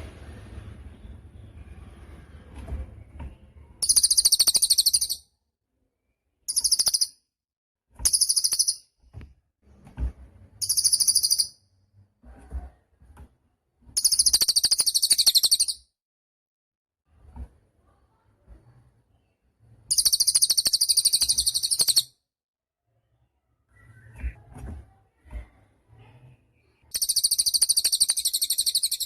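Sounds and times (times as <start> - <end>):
songbird trilling: 3.8 - 5.2, 6.5 - 7.1, 10.6 - 11.5, 14.0 - 15.8, 19.9 - 22.0, 26.9 - 29.0.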